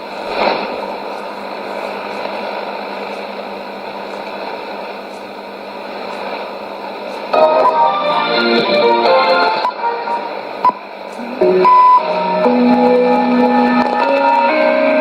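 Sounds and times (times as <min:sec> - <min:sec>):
radio broadcast music: 0:00.0 - 0:15.0
shortwave radio static: 0:00.0 - 0:15.0.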